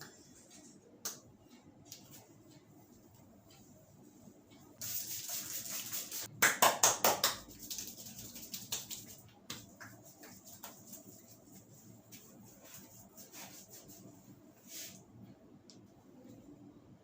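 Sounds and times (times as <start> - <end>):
hands slapping head: 6.4 - 10.8
hands rustling over hair: 10.1 - 15.0.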